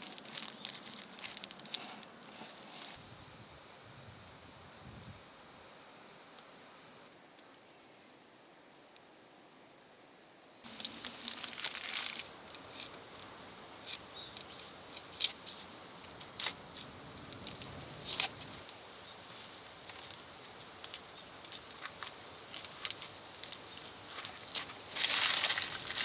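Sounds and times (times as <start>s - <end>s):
crinkling and crackling handling: 0.0s - 3.0s, 10.7s - 26.0s.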